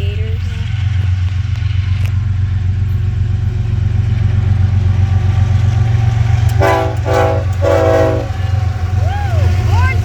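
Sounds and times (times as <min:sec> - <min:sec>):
diesel locomotive engine drone: 0:00.0 - 0:10.0
locomotive air horn: 0:06.5 - 0:08.6.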